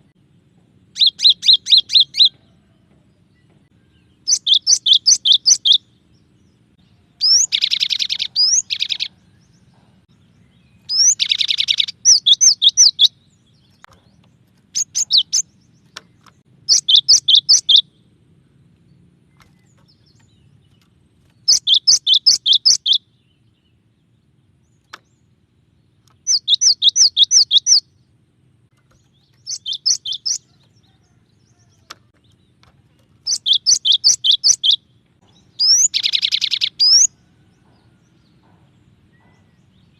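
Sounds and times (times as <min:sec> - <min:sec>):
bird singing whistled notes: 0:00.9 - 0:02.7, 0:03.4 - 0:06.0, 0:06.9 - 0:09.8, 0:10.4 - 0:13.8, 0:14.7 - 0:18.1, 0:21.4 - 0:23.8, 0:26.1 - 0:28.0, 0:28.8 - 0:32.0, 0:33.2 - 0:37.6.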